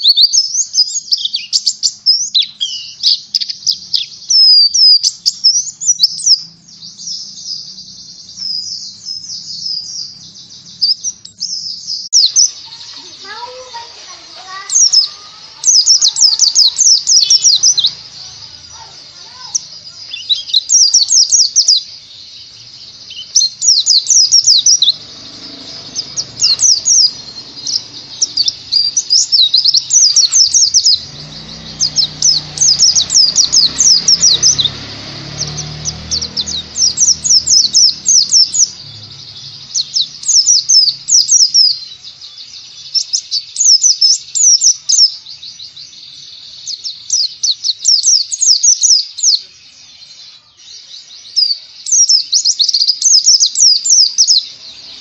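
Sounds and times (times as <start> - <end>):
bird singing rapid high chirps: 0.0 - 55.0.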